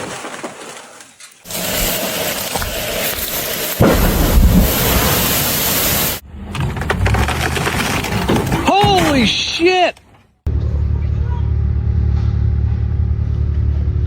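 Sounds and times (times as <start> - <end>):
tree crashing through branches: 0.0 - 8.7
low rumble of tree hitting ground: 1.5 - 5.5.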